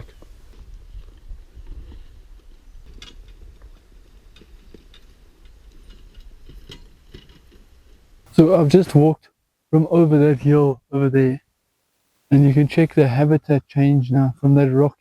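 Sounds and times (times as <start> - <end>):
footsteps and gear clicking: 0.0 - 8.1
wind rumble on microphone: 0.0 - 8.3.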